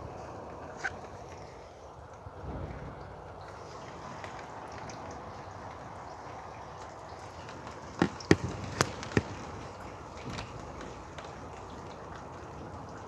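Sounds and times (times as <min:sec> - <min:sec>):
light rain: 0:00.0 - 0:13.0
wind: 0:00.0 - 0:13.0
sharp knocks: 0:08.0 - 0:09.5.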